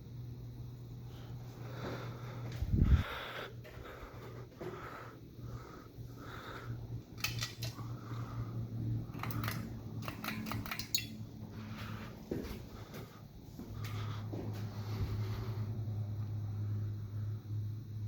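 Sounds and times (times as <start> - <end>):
ceiling fan motor hum: 0.0 - 18.0
light metallic clicks: 9.1 - 11.2.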